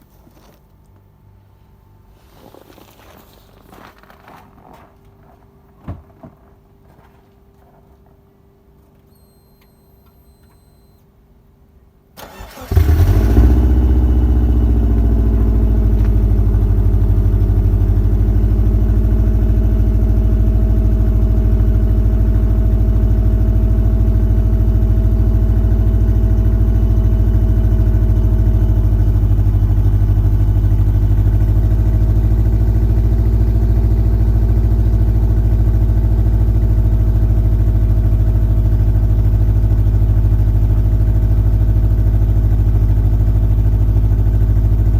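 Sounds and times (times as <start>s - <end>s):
car engine starting and idling: 12.2s - 44.9s.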